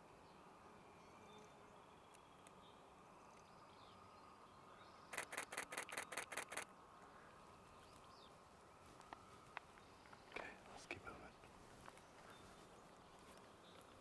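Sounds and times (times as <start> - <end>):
camera shutter burst: 5.2 - 6.6.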